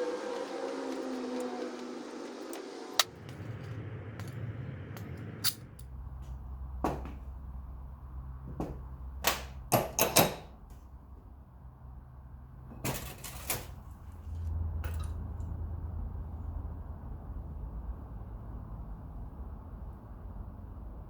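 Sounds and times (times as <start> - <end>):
steady low hum: 1.4 - 9.2
metal parts and tools clicking: 5.0 - 5.9.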